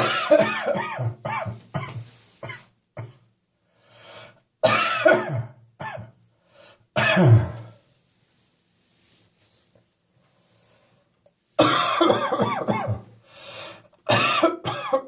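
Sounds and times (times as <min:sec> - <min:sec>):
person coughing: 0:00.0 - 0:03.2, 0:04.6 - 0:06.2, 0:07.0 - 0:07.7, 0:11.6 - 0:13.1, 0:14.1 - 0:15.0
person breathing in: 0:03.7 - 0:04.4, 0:13.2 - 0:14.0.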